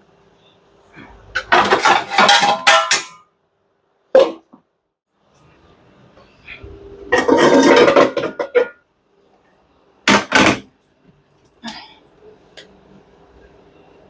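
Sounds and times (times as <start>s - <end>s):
cookware rattling scrape: 1.4s - 3.2s, 7.1s - 8.8s.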